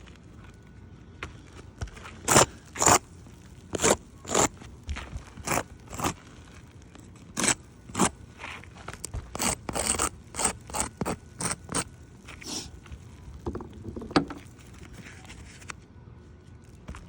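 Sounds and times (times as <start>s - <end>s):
pry bar scraping shingles: 1.8s - 12.7s.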